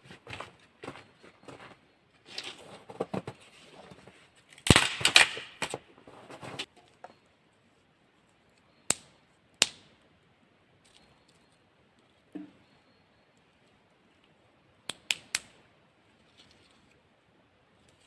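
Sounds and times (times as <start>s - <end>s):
sticks knocking and crackling: 4.4s - 7.2s
sharp stick cracks: 4.6s - 5.7s, 8.9s - 9.9s, 14.9s - 15.6s.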